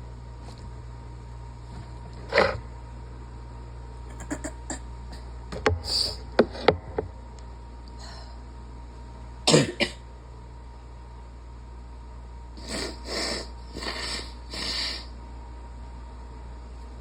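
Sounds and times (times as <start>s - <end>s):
breaths: 8.0s - 8.4s.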